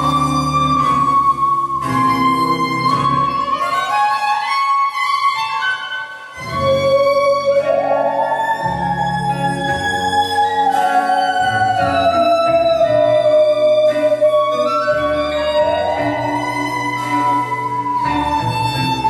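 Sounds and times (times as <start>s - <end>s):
high sliding melody: 0.0s - 4.5s.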